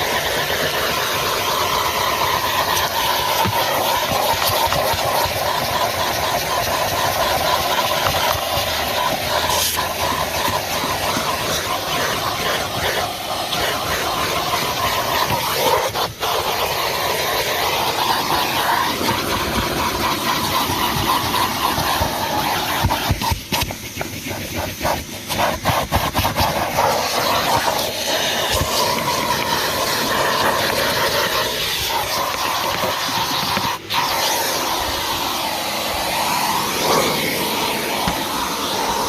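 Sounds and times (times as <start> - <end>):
vacuum cleaner running: 0.0 - 39.0.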